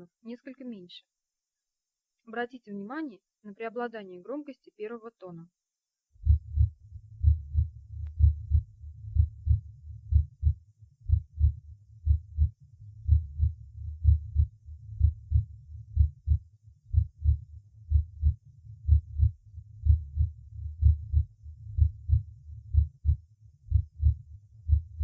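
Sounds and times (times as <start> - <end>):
heartbeat lub-dub: 6.2 - 25.0.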